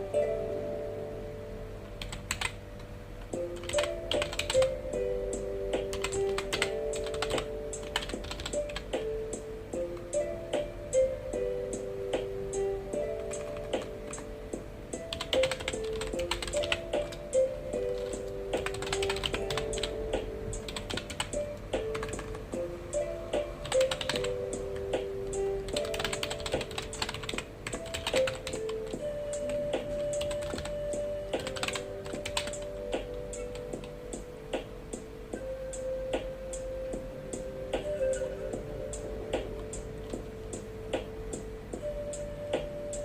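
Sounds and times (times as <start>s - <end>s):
soft background music: 0.0s - 43.0s
keyboard typing clicks: 2.0s - 2.6s, 3.6s - 4.8s, 5.8s - 9.1s, 15.1s - 17.3s, 17.9s - 22.4s, 23.6s - 25.1s, 25.7s - 29.6s, 30.2s - 30.7s, 31.4s - 34.0s.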